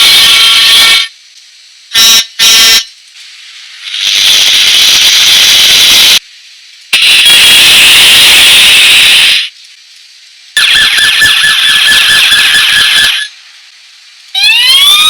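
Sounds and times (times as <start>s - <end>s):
long hiss: 0.0s - 10.6s, 13.2s - 14.4s.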